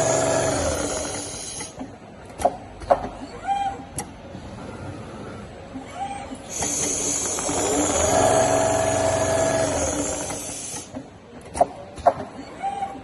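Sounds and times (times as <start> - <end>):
sewing machine motor hum: 0.0 - 1.6, 6.6 - 10.8.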